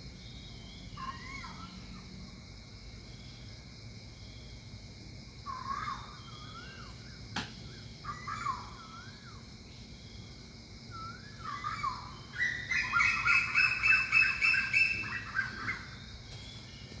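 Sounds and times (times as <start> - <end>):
birds calling: 11.0 - 17.0.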